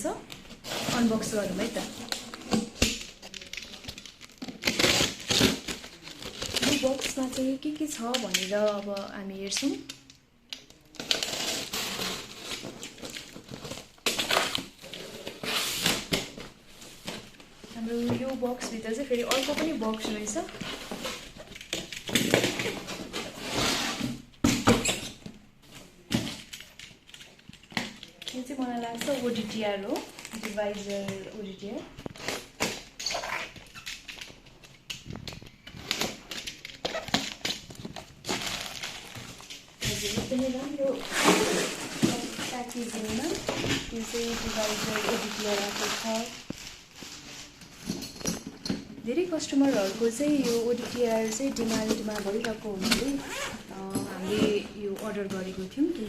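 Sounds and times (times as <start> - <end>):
cardboard rustling and scraping: 0.4 - 7.2, 19.4 - 26.5, 32.1 - 55.9.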